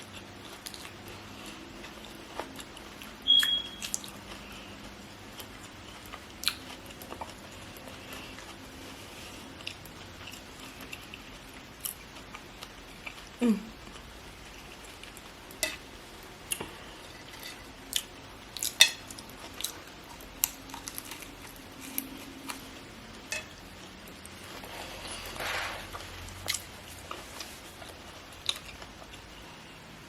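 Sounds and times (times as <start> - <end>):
person chewing crunchy food: 0.0 - 29.5
soft rustling: 24.4 - 28.4.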